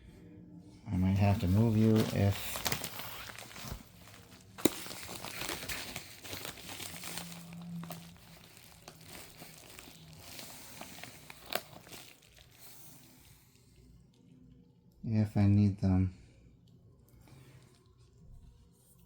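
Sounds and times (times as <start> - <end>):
plastic packaging crinkling: 0.9 - 13.5.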